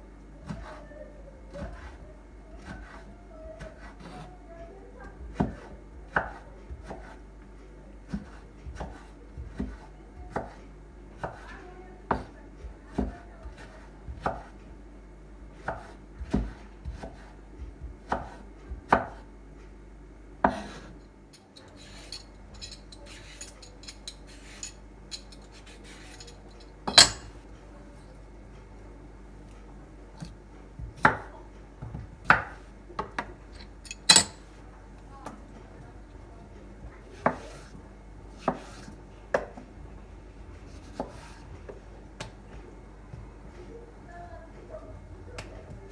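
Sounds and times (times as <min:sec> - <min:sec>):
knife chopping on cutting board: 0:00.4 - 0:00.8, 0:02.6 - 0:04.3, 0:05.1 - 0:07.2, 0:08.0 - 0:10.6, 0:11.2 - 0:14.6, 0:15.6 - 0:19.3, 0:20.4 - 0:21.0, 0:30.2 - 0:34.4, 0:37.1 - 0:39.7, 0:40.7 - 0:42.4.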